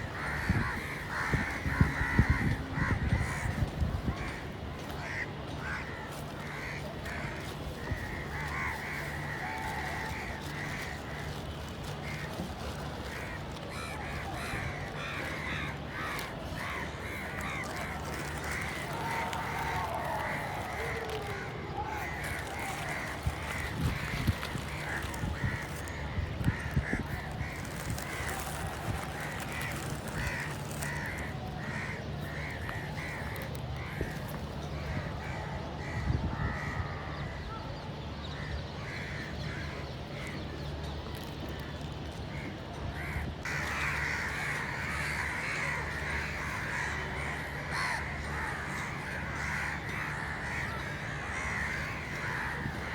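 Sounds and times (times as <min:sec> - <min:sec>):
steady low rumble: 0:00.0 - 0:37.5
crows cawing: 0:00.1 - 0:37.4, 0:43.0 - 0:52.9.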